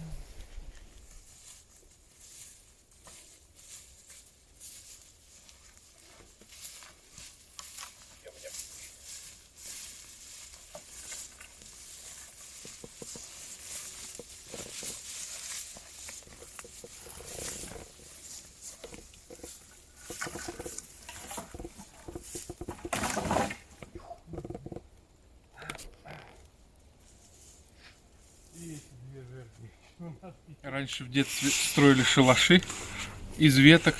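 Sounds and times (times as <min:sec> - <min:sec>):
people chewing: 0:06.0 - 0:23.0, 0:31.8 - 0:33.9
scraping and clicking: 0:12.6 - 0:24.8.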